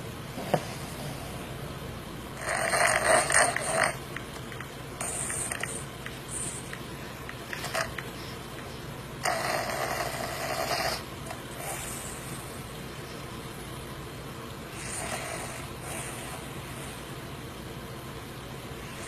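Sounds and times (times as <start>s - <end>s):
steady low hum: 0.0s - 19.0s
person snoring: 2.4s - 4.0s, 9.2s - 12.3s.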